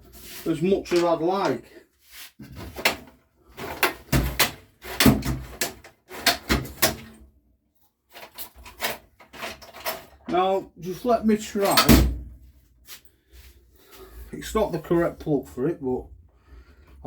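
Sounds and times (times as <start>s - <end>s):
tools and parts clattering: 0.2s - 1.6s, 2.4s - 7.3s, 8.1s - 10.4s, 11.6s - 12.2s.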